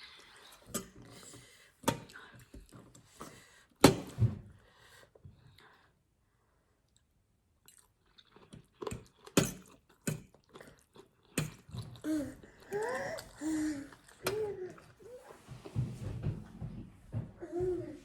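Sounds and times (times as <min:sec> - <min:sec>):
person chewing crunchy food: 0:07.6 - 0:15.1.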